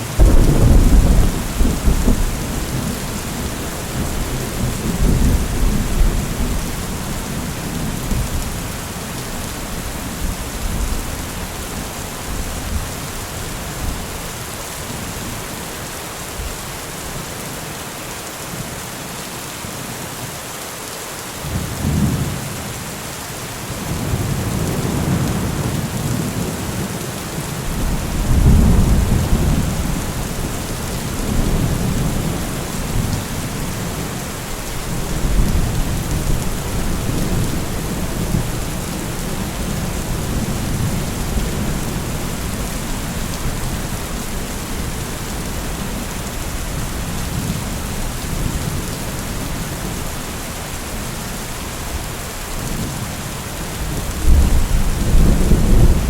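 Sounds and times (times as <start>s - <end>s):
steady rain falling: 0.0s - 56.0s
low rolling thunder: 0.2s - 8.8s, 27.7s - 50.0s, 53.8s - 56.0s.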